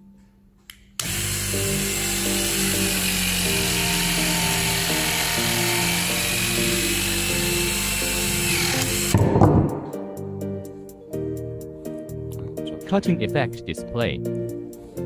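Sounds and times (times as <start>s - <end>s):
cutting tool motor whining: 1.0s - 9.2s.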